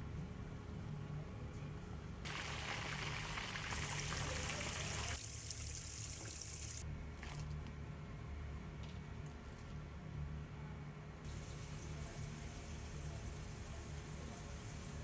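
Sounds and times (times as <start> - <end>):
water running: 2.3 - 6.8.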